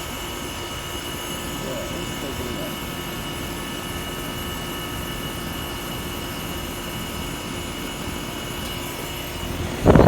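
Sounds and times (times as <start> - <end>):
condensing unit humming: 0.0 - 10.0.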